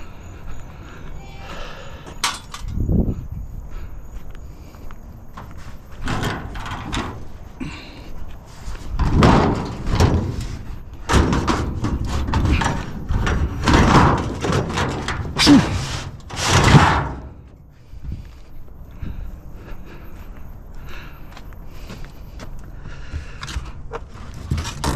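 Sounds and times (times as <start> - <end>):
scrap items knocking and clattering: 9.0 - 17.2.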